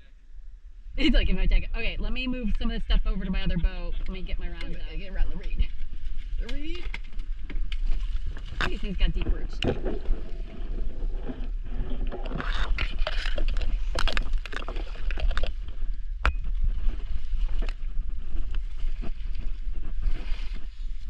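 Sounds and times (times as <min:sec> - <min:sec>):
low wind rumble on microphone: 0:00.0 - 0:21.0
reeds scraping against kayak hull: 0:03.7 - 0:21.0.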